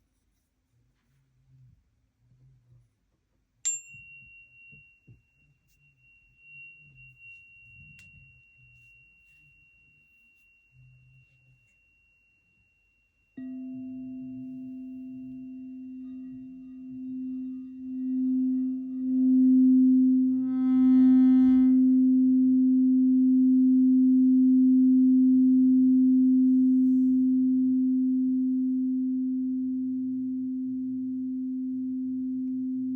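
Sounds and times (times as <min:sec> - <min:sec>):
singing bowl ringing: 0:03.7 - 0:22.7.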